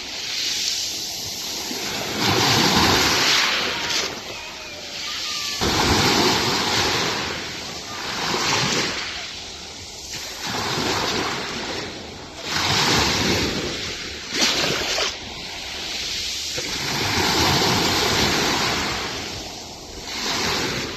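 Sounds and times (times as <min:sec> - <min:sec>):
sea waves breaking on shore: 0:00.0 - 0:20.9.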